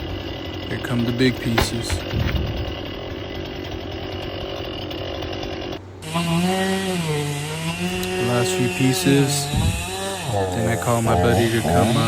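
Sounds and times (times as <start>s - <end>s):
chainsaw cutting wood: 0.0s - 12.0s.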